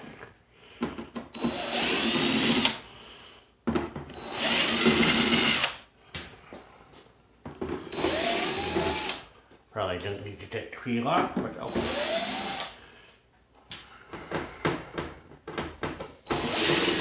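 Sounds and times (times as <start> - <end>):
power screwdriver whirring: 1.4 - 2.8, 4.2 - 5.8, 7.9 - 9.2, 11.8 - 12.8, 16.2 - 17.0.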